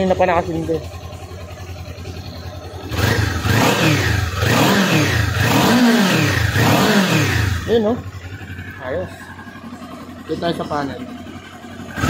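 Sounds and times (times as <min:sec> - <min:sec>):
motorcycle engine idling and revving: 0:00.0 - 0:12.0.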